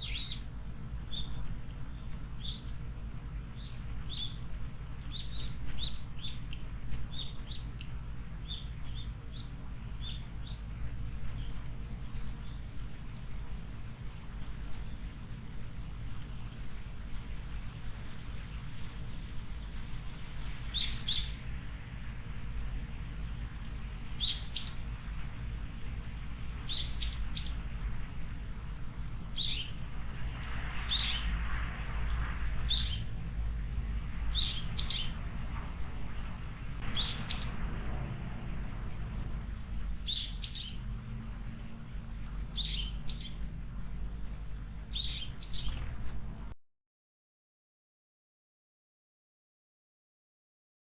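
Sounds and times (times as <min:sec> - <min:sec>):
small bird chirping: 0:00.0 - 0:00.5, 0:01.1 - 0:02.8, 0:03.6 - 0:12.8, 0:20.6 - 0:21.5, 0:24.1 - 0:24.9, 0:26.6 - 0:27.7, 0:29.3 - 0:29.8, 0:30.9 - 0:31.4, 0:32.6 - 0:33.1, 0:34.3 - 0:35.2, 0:36.8 - 0:37.5, 0:40.0 - 0:40.9, 0:42.4 - 0:43.5, 0:44.9 - 0:45.9
low background noise: 0:00.0 - 0:46.6
steady low rumble: 0:00.0 - 0:46.6.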